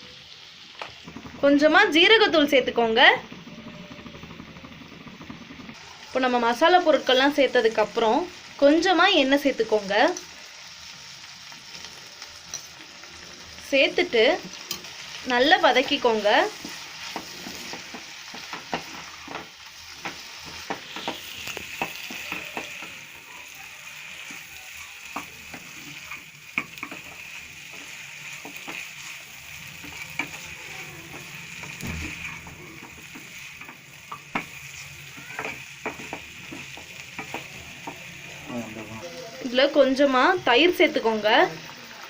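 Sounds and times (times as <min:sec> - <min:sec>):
food sizzling in oil: 0:00.0 - 0:42.0
spoon stirring and scraping: 0:20.0 - 0:38.1.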